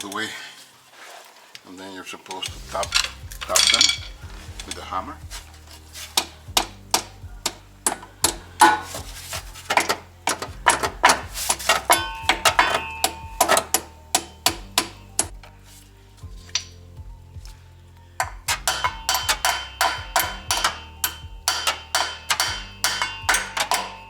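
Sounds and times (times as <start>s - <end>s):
hammer striking steel bolts: 6.0s - 15.4s, 18.2s - 24.0s.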